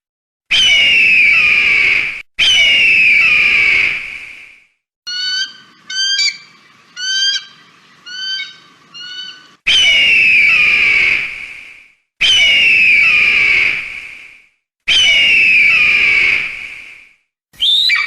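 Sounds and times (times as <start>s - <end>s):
kite shrill calls: 5.1s - 10.3s, 17.6s - 18.0s.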